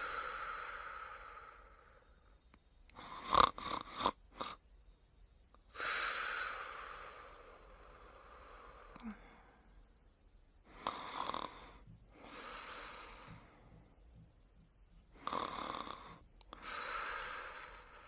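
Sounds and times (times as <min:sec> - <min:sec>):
person snoring: 0:00.0 - 0:02.0, 0:03.0 - 0:04.6, 0:05.7 - 0:09.5, 0:10.7 - 0:13.6, 0:15.2 - 0:18.0.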